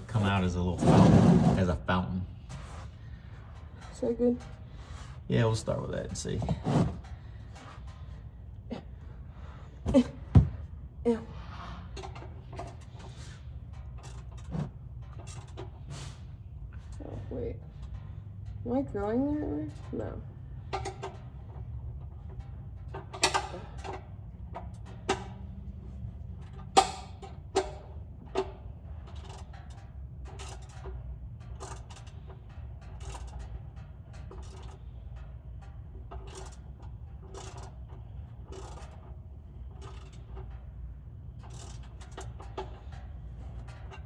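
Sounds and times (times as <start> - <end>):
ratchet wrench clicking: 12.0 - 15.8, 26.4 - 44.0.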